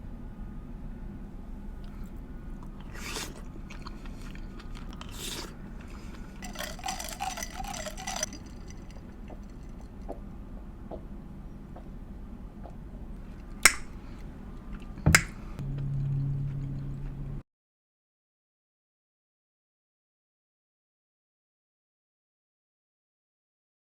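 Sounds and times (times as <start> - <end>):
chewing and wet mouth noises: 1.8 - 10.2, 12.6 - 17.1
lip smacking clicks: 13.4 - 14.0.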